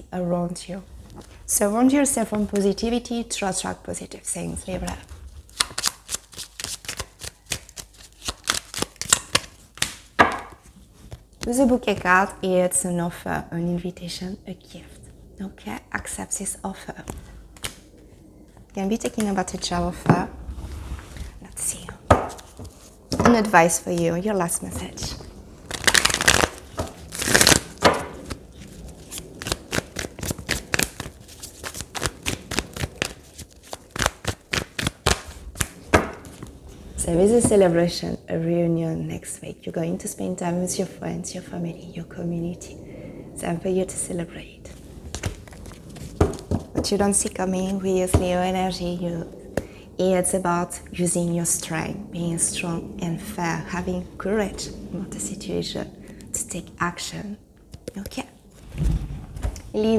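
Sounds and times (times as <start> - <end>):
cards being shuffled: 4.8 - 12.1, 25.7 - 36.5, 45.1 - 46.7.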